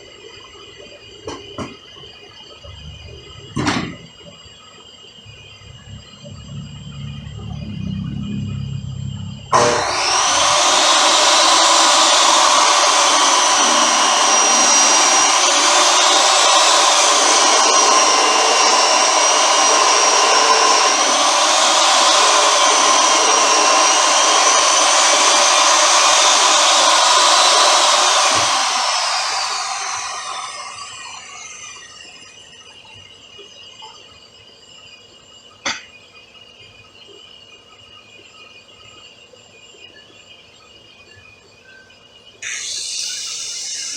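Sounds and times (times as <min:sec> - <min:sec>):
electric motor whine: 0:05.2 - 0:32.6, 0:42.4 - 0:43.9.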